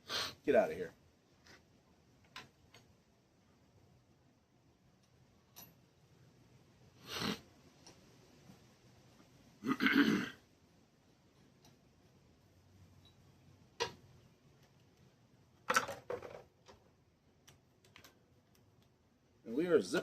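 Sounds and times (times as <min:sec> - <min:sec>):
tools and metal parts clinking: 0:05.0 - 0:05.9, 0:15.7 - 0:16.4.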